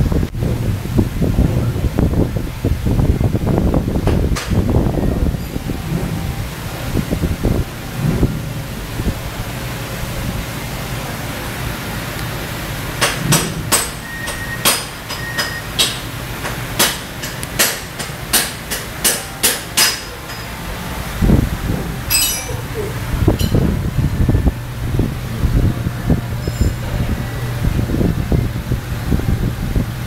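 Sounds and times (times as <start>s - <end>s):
hammer striking metal: 13.0s - 20.7s, 22.1s - 22.7s.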